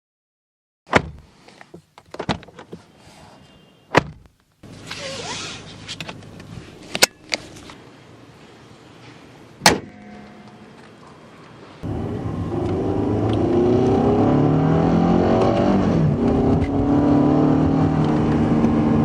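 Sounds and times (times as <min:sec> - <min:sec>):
car bonnet slamming: 0:00.9 - 0:01.2, 0:03.9 - 0:04.3, 0:09.6 - 0:10.9
car door shutting: 0:00.9 - 0:02.8, 0:03.9 - 0:04.3
seatbelt webbing sliding: 0:00.9 - 0:07.8.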